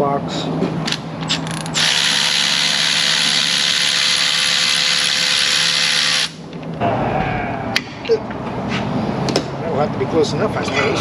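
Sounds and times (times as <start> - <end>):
power tool whirring: 0.9 - 6.4.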